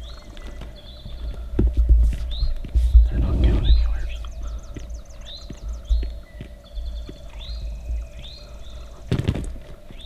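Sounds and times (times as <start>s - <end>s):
low rumble: 2.9s - 4.7s
bird short rising call: 3.1s - 4.5s.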